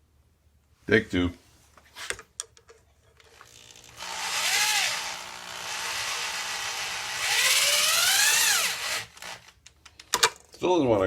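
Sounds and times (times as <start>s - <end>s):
power drill motor whining: 3.3s - 9.6s.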